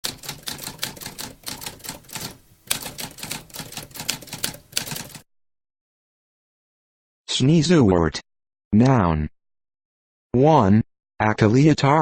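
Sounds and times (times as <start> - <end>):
typewriter keys clacking: 0.0 - 5.2.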